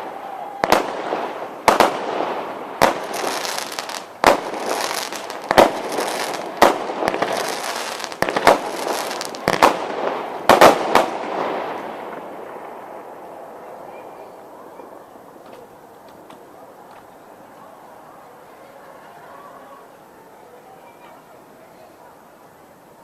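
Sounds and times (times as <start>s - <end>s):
fireworks banging: 0.0s - 17.6s
fireworks crackling hiss: 0.0s - 23.0s.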